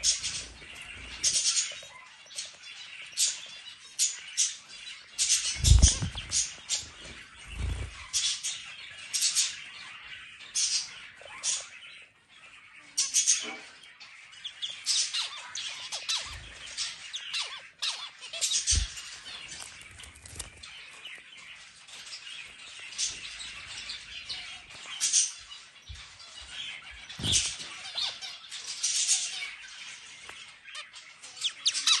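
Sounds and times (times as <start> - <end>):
finch chirping and singing: 0.0 - 32.0
low thumps: 5.6 - 6.4.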